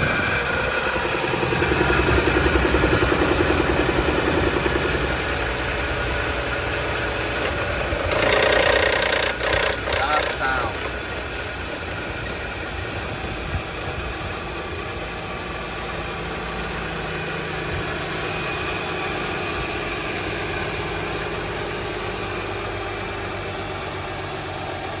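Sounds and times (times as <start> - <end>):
car engine idling: 0.0 - 25.0
odd engine noise: 0.0 - 25.0.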